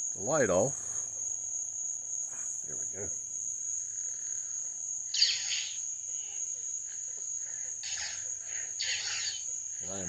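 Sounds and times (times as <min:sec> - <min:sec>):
cricket trill: 0:00.0 - 0:10.0
toy lightsaber swing effect: 0:08.8 - 0:09.4.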